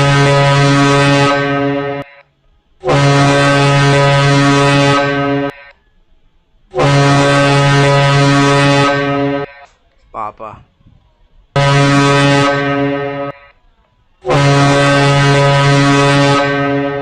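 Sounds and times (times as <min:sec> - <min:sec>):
morse code dashes on buzzing tone: 0:00.0 - 0:02.3, 0:02.9 - 0:05.8, 0:06.8 - 0:09.7, 0:11.6 - 0:13.6.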